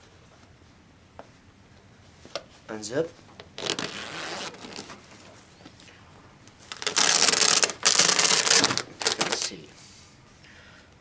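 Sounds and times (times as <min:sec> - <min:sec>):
zipper being unzipped: 0:03.6 - 0:04.9.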